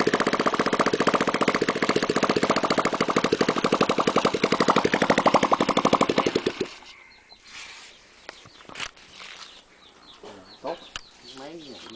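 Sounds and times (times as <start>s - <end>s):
small engine running: 0.0s - 6.9s.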